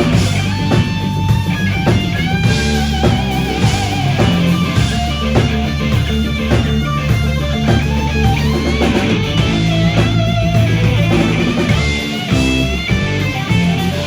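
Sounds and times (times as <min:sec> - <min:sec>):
bass guitar: 0:00.0 - 0:14.0
drums: 0:00.0 - 0:14.0
electric guitar lead with vibrato: 0:00.0 - 0:14.0.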